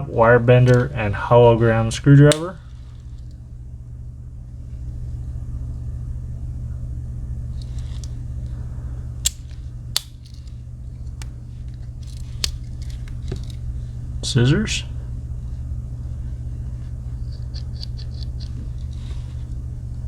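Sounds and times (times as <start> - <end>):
steady low hum: 0.0 - 20.0
pocket knife tools clicking: 17.2 - 18.6.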